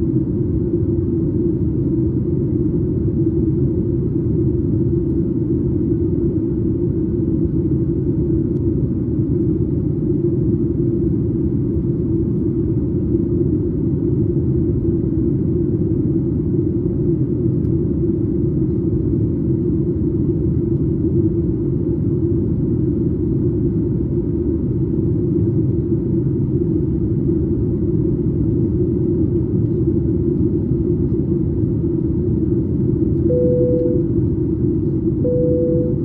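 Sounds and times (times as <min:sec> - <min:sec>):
airplane cabin rumble: 0:00.0 - 0:36.0
short steady tones: 0:33.3 - 0:34.1, 0:35.2 - 0:36.0.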